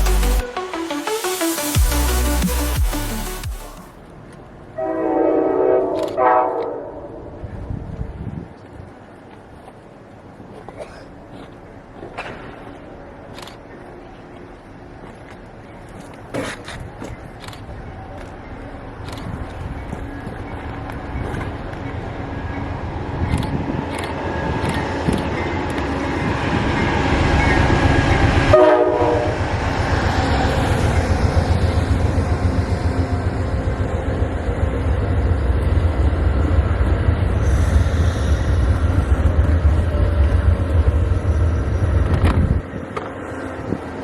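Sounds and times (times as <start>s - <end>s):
train horn blast: 4.8s - 7.4s, 28.5s - 29.7s
train wheels rumbling on rail: 7.3s - 44.0s.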